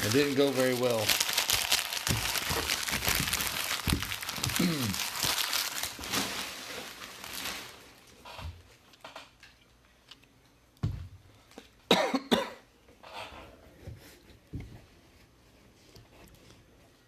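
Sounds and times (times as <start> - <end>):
packaging crinkling: 0.0 - 8.1
person coughing: 4.6 - 5.0, 11.9 - 12.6.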